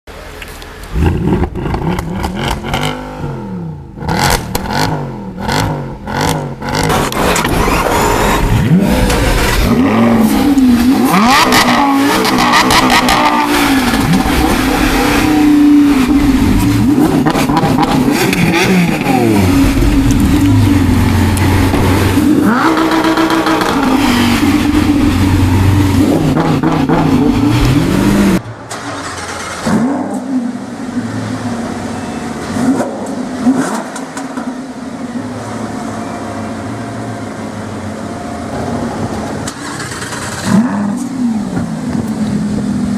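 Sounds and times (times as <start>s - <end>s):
sports car engine revving: 0.9s - 28.4s, 29.0s - 35.8s, 37.2s - 42.9s
exhaust pops and crackles: 4.1s - 4.9s, 16.0s - 25.1s.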